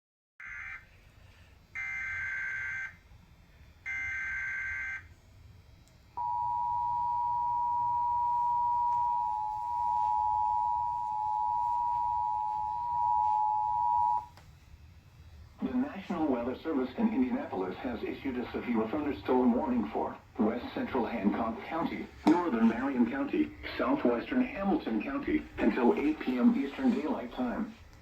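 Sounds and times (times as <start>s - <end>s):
steady two-tone attention signal: 6.2s - 14.3s.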